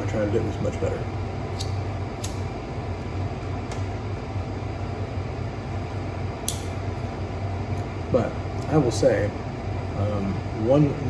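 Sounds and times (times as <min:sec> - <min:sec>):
electric fireplace humming: 0:00.0 - 0:11.0.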